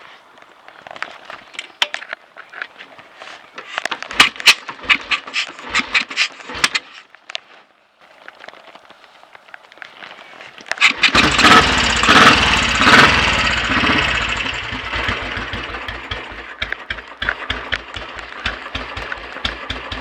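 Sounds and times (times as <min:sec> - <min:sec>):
motorcycle handling clicks and scraping: 0:00.7 - 0:07.5, 0:10.6 - 0:20.0
loud knocks: 0:15.1 - 0:20.0.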